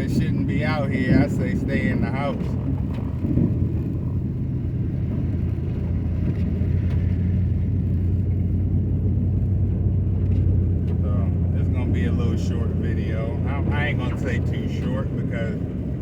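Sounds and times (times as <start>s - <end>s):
car engine and road noise: 0.0s - 16.0s.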